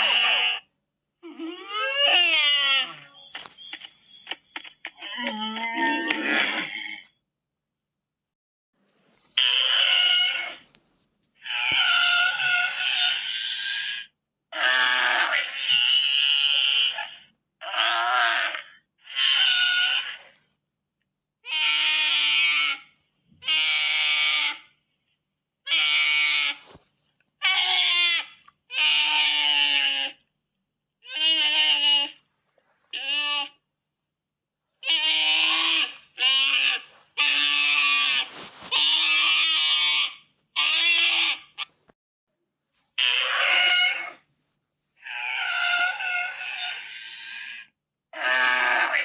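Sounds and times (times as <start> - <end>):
shrill screeching creature cries: 0.0 - 0.7, 1.6 - 3.3, 9.4 - 10.6, 11.4 - 20.3, 21.5 - 24.7, 25.7 - 26.7, 27.4 - 30.2, 31.0 - 32.2, 32.9 - 33.6, 34.8 - 41.7, 43.0 - 44.2, 45.0 - 49.0.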